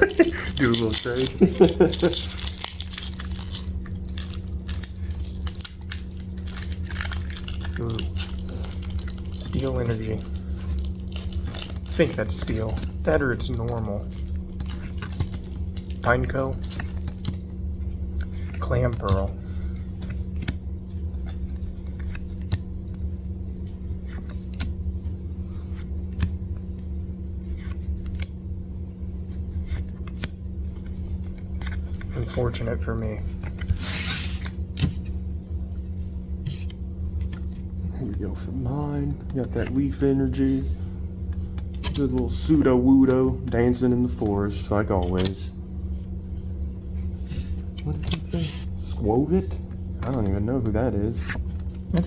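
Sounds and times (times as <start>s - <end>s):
foil pack crinkling and tearing: 0.0s - 17.5s
cards clicking and rustling: 0.0s - 23.1s, 23.7s - 24.8s, 25.6s - 26.8s, 27.4s - 28.4s, 29.3s - 35.2s, 36.4s - 42.7s, 43.4s - 45.5s, 47.4s - 50.4s
steady low hum: 0.0s - 52.0s.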